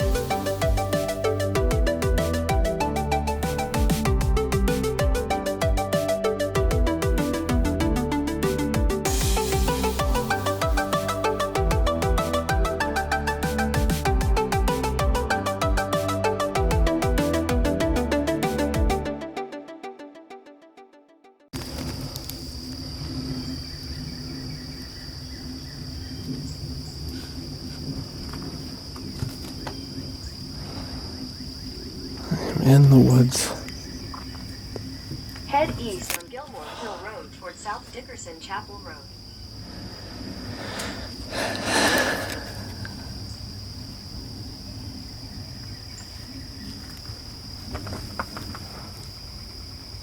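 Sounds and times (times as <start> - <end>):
insect chorus droning: 21.6 - 50.0.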